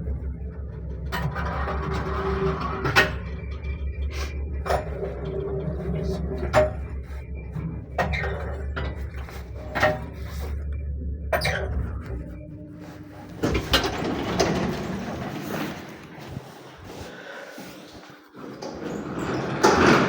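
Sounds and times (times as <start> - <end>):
lift cabin low hum: 0.0 - 19.8
creaking cabin squeaks: 11.3 - 17.1, 17.9 - 20.0
cabin knocks and clicks: 13.3 - 16.1.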